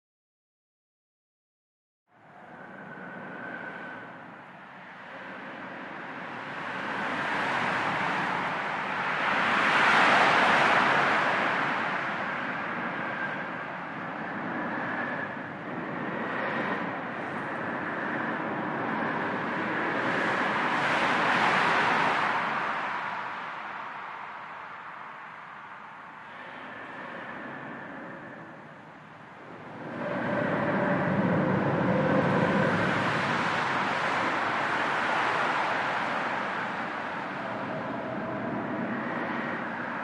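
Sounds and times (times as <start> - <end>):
highway traffic rushing: 4.7 - 40.0
vehicles passing overhead: 14.8 - 40.0.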